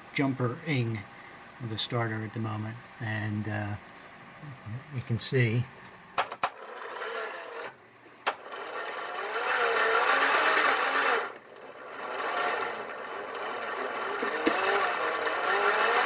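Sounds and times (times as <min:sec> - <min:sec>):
starter motor cranking: 0:06.2 - 0:16.0.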